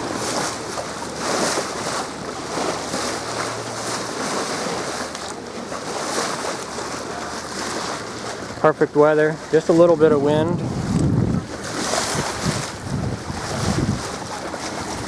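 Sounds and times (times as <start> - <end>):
water washing along a hull: 0.0 - 15.0
wind buffeting microphone: 7.2 - 15.0.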